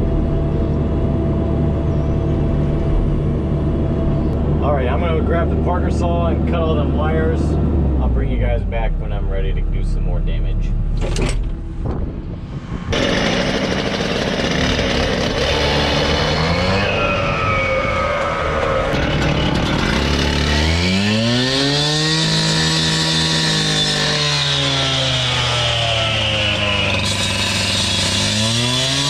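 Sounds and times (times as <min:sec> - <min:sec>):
two-stroke saw engine revving: 0:12.8 - 0:29.0.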